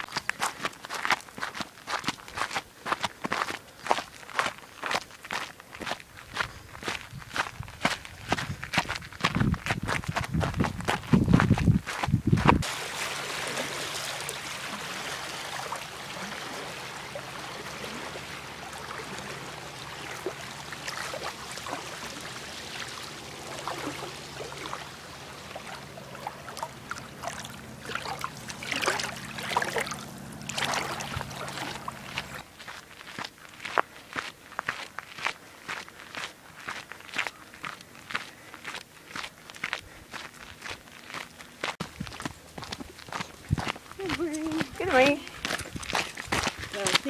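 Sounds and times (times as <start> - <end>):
sharp splashes or knocks: 12.6 - 32.4
water trickling and splashing: 12.6 - 47.0
faint low hum: 12.7 - 32.5.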